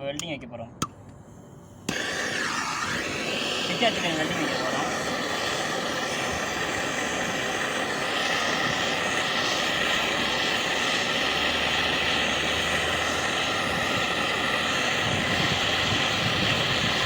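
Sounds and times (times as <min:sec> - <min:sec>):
gas torch hissing: 0:00.8 - 0:17.0.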